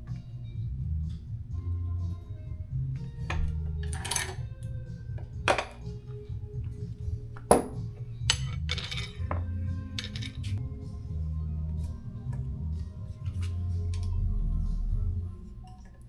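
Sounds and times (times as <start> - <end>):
background music: 0.0 - 16.0
metallic clinks of tools: 3.8 - 4.4, 8.2 - 10.6.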